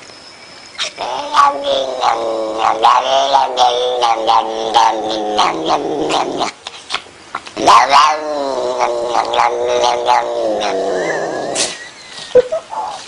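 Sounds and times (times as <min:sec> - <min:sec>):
cat yowling: 0:00.8 - 0:06.6, 0:07.4 - 0:11.8.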